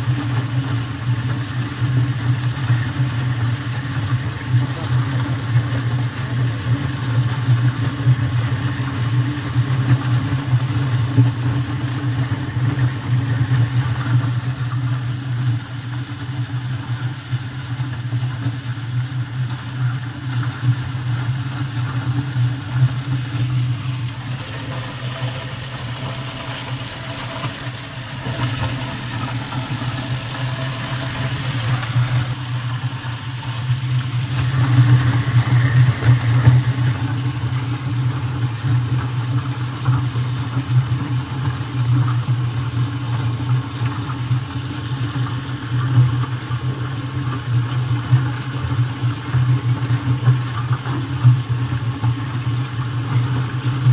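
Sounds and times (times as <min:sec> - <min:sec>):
machine humming: 0:20.2 - 0:40.0.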